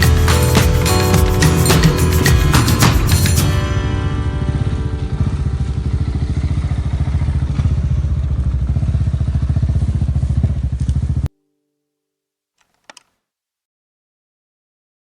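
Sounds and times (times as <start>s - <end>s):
motorcycle engine running: 0.0s - 11.3s.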